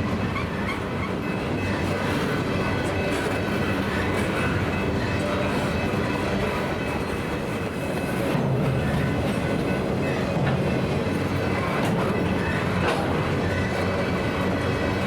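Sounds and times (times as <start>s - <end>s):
freight train wheels rumbling on rails: 0.0s - 15.0s
faint clicks over rail joints: 10.3s - 13.9s.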